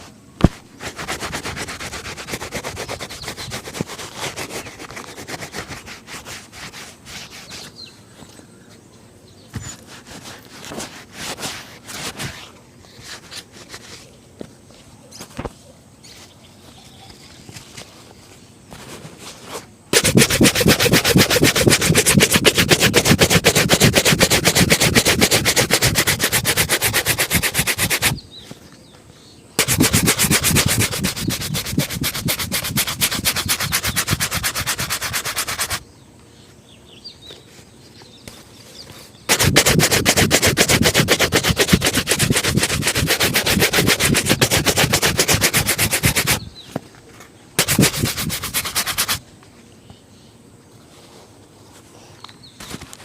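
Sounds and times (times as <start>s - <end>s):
brush rubbing leather shoe: 0.5s - 7.8s, 9.6s - 12.4s, 19.9s - 28.2s, 29.6s - 35.8s, 39.3s - 46.5s, 47.6s - 49.2s.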